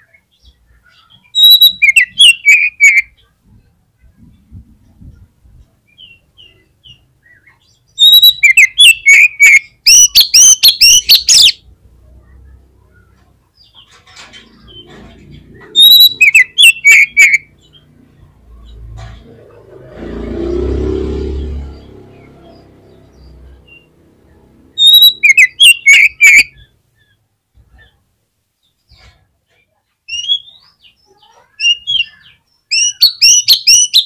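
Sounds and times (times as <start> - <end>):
songbird singing rapid high notes: 1.2 - 3.2, 6.0 - 11.7, 15.6 - 17.8, 24.7 - 26.7, 31.6 - 34.0
low muffled rumble: 3.4 - 5.8.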